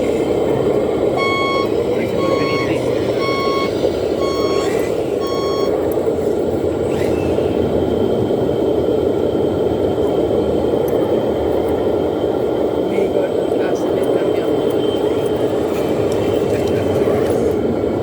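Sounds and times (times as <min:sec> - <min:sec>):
mechanical rumble: 0:00.0 - 0:18.0
reversing beeper: 0:01.2 - 0:05.8.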